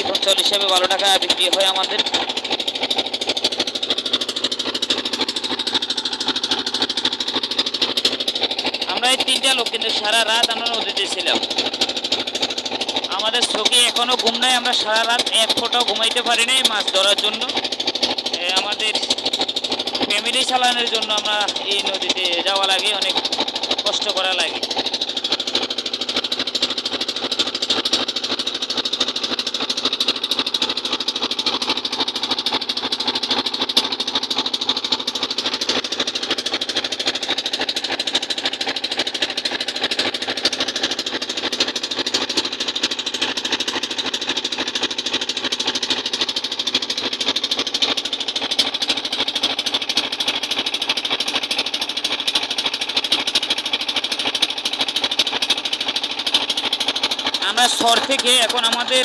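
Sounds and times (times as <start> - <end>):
boat engine clattering: 0.0 - 59.0.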